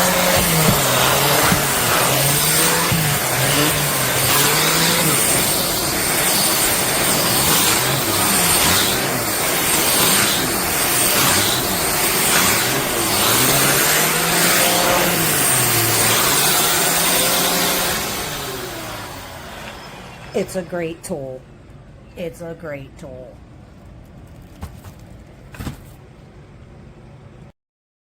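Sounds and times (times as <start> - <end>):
vacuum cleaner running: 0.0 - 21.3.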